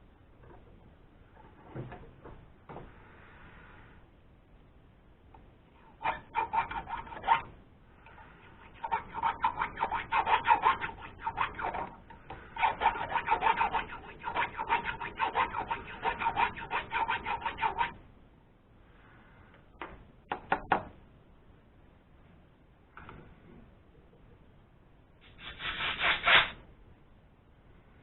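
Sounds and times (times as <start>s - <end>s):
hand tool rasping back and forth: 5.8s - 7.5s, 8.1s - 18.0s.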